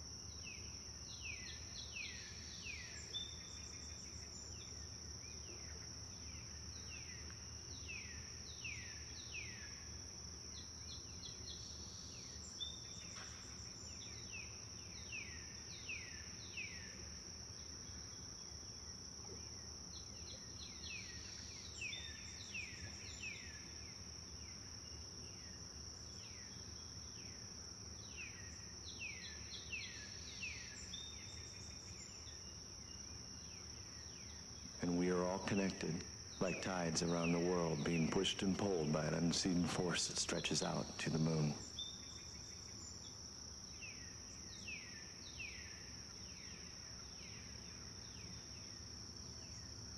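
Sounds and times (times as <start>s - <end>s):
high-pitched insect chorus: 0.0s - 49.9s.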